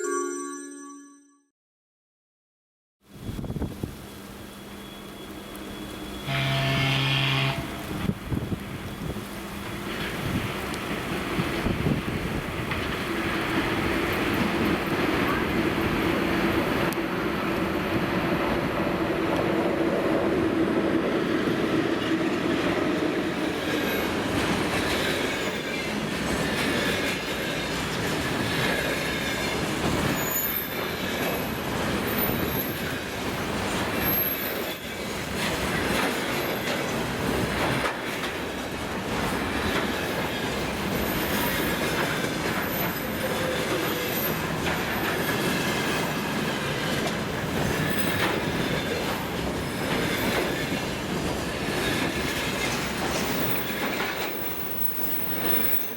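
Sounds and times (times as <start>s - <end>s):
freight train wheels rumbling: 7.7s - 55.9s
high wheel squeals: 30.0s - 32.9s.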